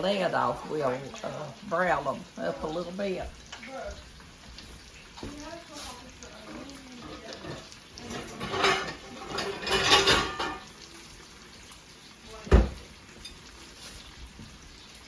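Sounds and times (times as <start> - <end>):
pots and pans clattering: 6.4 - 10.9, 12.4 - 14.5.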